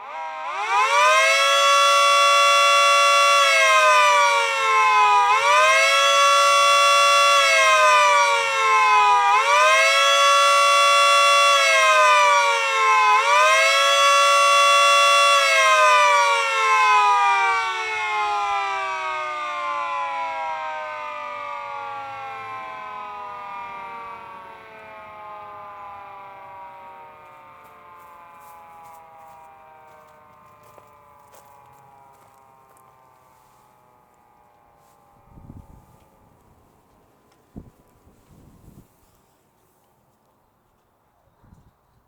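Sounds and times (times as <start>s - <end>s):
dual-tone siren winding: 0.0s - 30.6s.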